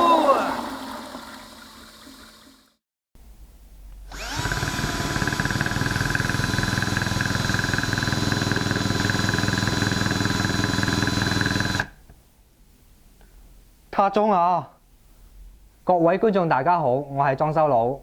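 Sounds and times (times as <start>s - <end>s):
electric drill whining: 4.1s - 11.9s.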